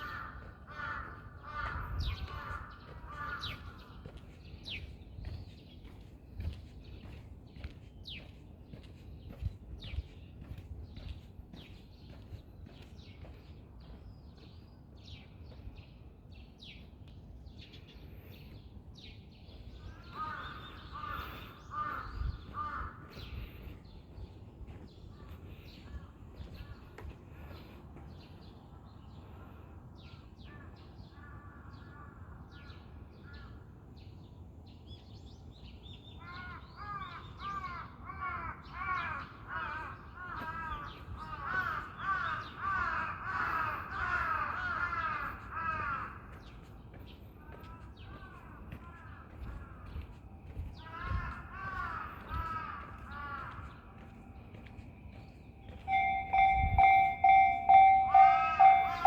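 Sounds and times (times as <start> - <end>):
crows cawing: 0.0 - 4.3, 19.7 - 23.8, 36.2 - 54.1, 57.1 - 59.0
short high chirps: 55.9 - 59.0.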